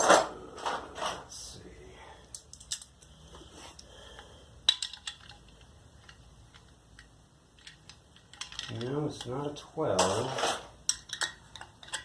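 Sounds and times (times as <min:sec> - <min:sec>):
metal tools clinking: 0:02.3 - 0:03.0, 0:07.6 - 0:12.0.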